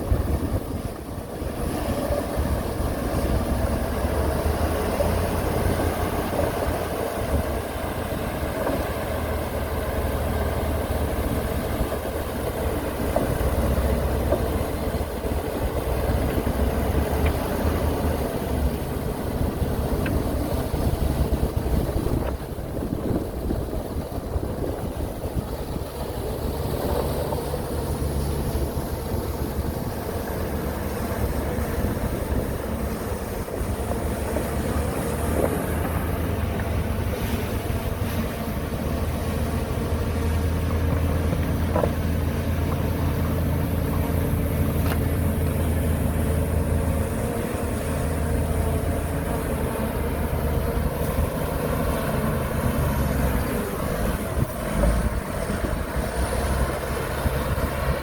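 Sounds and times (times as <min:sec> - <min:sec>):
heavy diesel engine running: 0:00.0 - 0:58.0.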